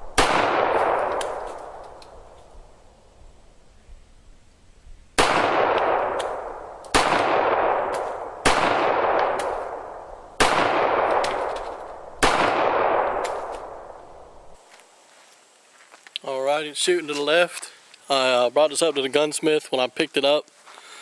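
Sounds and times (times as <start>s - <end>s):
pistol shots echoing: 0.1s - 1.8s, 5.2s - 14.0s.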